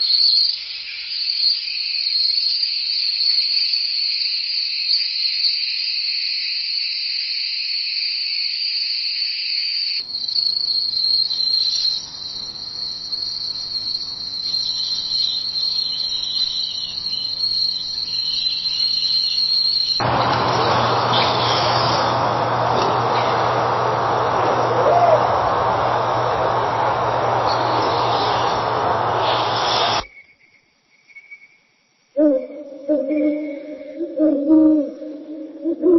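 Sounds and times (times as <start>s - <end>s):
crickets trilling: 0.0s - 35.7s
loud steady noise: 20.0s - 30.0s.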